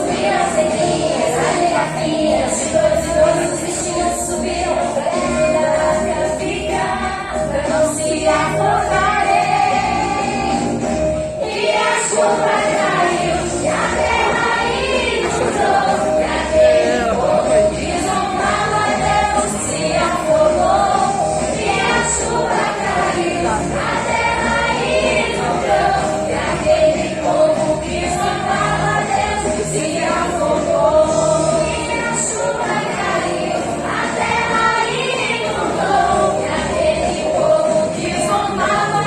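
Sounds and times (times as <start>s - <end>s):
accompanying music: 0.0s - 39.0s
choir singing: 0.0s - 39.0s.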